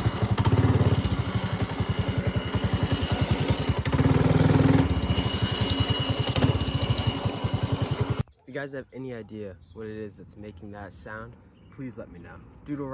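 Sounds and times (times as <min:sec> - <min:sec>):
minibike engine running: 0:00.0 - 0:08.2.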